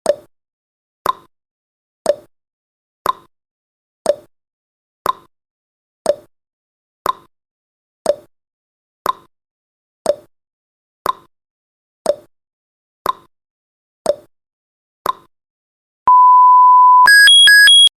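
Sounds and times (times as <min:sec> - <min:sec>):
steady beep: 0:16.1 - 0:17.9
two-tone electronic alarm beeping: 0:16.1 - 0:17.9.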